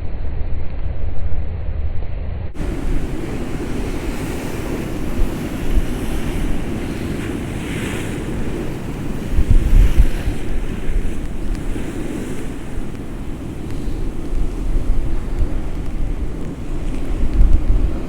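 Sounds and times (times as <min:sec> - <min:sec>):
strong wind: 0:00.0 - 0:18.0
surf crashing against sea wall: 0:02.6 - 0:18.0
wind buffeting microphone: 0:02.6 - 0:18.0.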